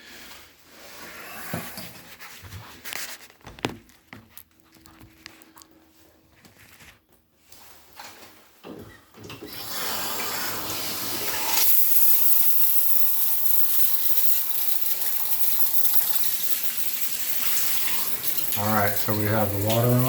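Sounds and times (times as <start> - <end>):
shower water spraying: 9.6 - 20.0.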